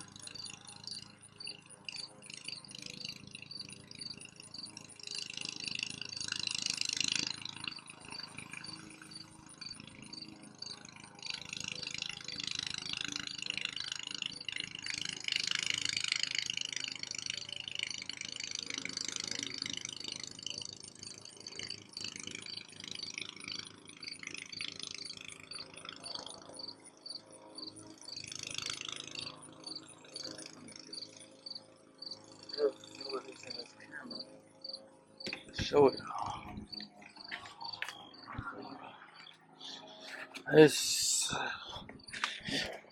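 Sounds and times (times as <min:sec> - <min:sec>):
crickets chirping: 0:00.0 - 0:42.9.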